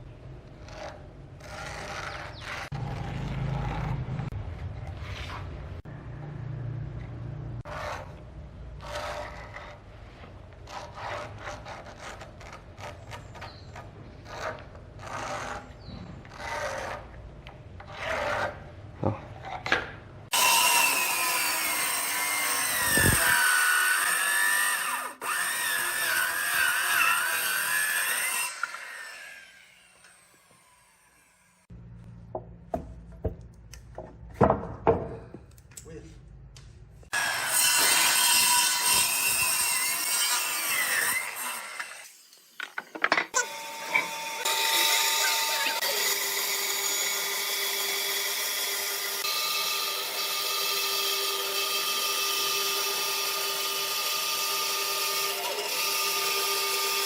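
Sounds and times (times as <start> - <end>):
power tool on wood: 20.3 - 31.7, 37.1 - 57.0.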